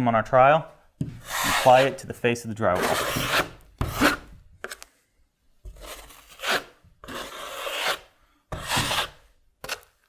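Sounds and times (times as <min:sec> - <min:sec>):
trowel scraping drywall: 0:01.2 - 0:02.1, 0:02.7 - 0:04.8, 0:05.7 - 0:10.0.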